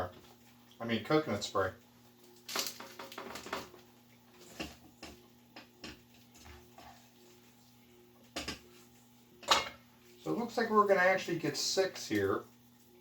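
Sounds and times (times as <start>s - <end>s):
kitchen clicks and rustles: 2.3s - 7.1s, 9.4s - 9.9s.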